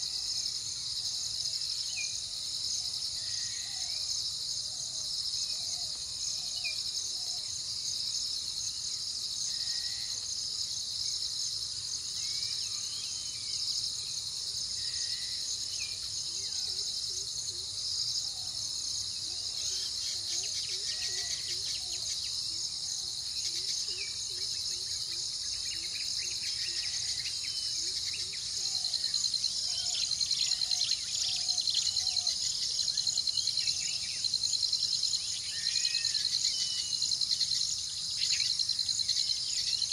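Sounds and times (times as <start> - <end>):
insect chorus chirring: 0.0 - 39.9.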